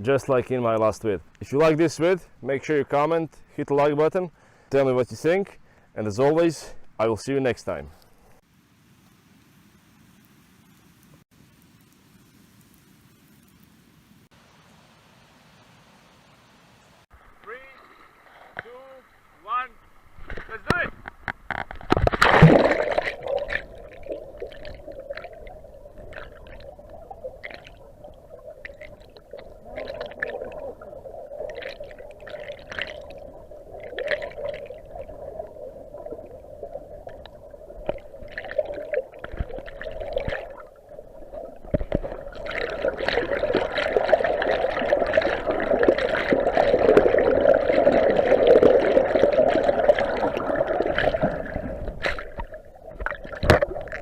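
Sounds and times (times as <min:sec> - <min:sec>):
creek water gurgling: 0:17.1 - 0:20.8, 0:21.5 - 0:54.0
small water splashes: 0:21.5 - 0:54.0.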